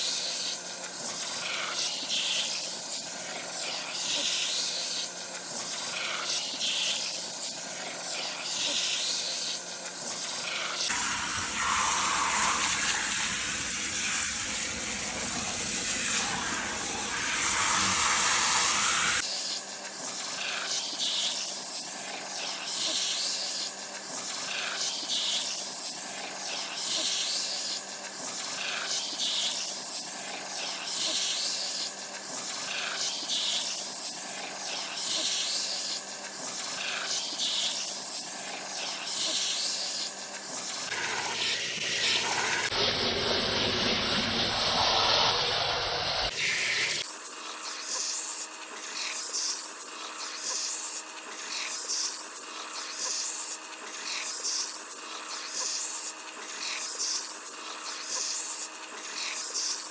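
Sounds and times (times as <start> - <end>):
hair dryer blowing: 10.9 - 19.2.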